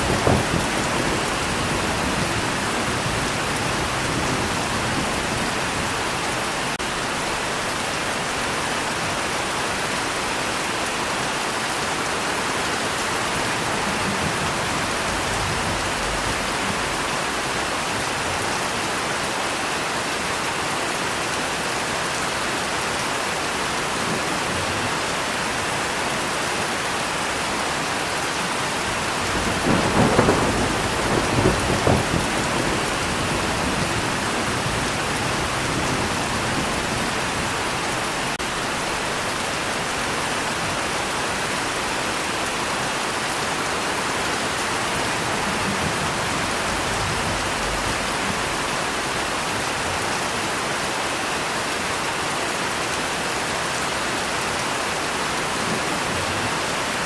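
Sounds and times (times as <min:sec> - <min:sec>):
thunder peal: 0:00.0 - 0:05.4, 0:29.2 - 0:37.0
steady rain: 0:00.0 - 0:57.0.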